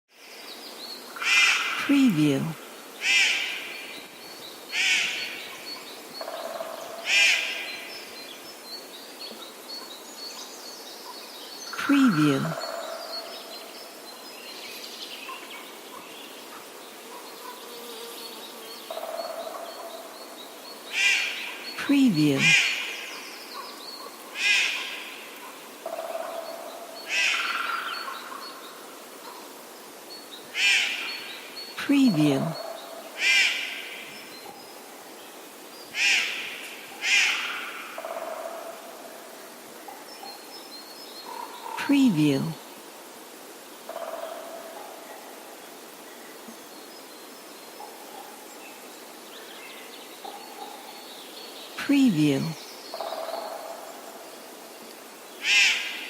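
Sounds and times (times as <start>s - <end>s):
crow cawing: 4.8s - 5.2s, 55.4s - 55.9s.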